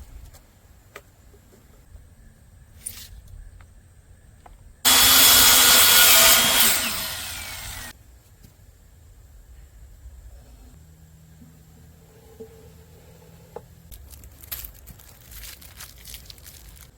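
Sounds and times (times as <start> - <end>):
electric power saw cutting wood: 4.9 - 7.9.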